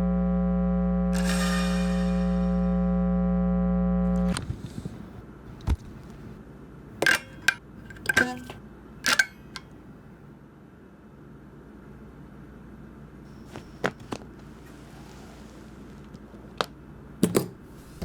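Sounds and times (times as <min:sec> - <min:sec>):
electronic hum: 0:00.0 - 0:06.4
sharp clicks and knocks: 0:07.0 - 0:09.8.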